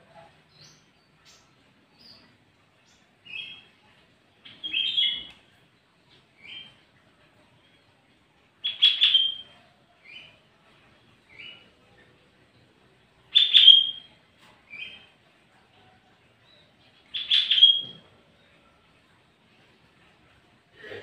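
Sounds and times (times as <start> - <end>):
bird singing: 0.5 - 3.7, 4.4 - 5.3, 8.6 - 10.4, 13.3 - 15.1, 16.5 - 18.8.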